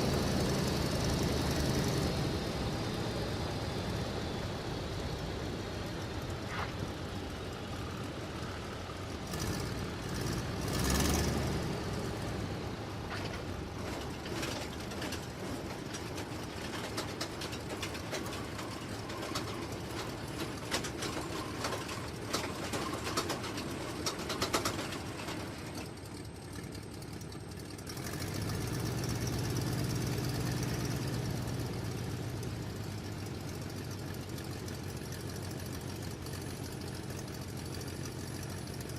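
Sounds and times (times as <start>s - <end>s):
radial aircraft engine running: 0.0s - 38.9s
clicks and rattles: 13.1s - 26.7s.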